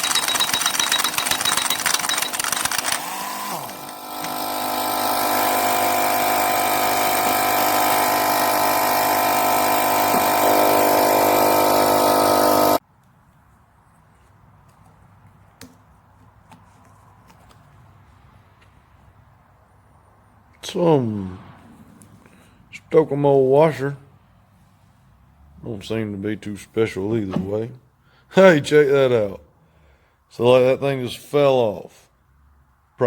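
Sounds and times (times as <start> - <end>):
impact wrench hammering: 0.0 - 12.8.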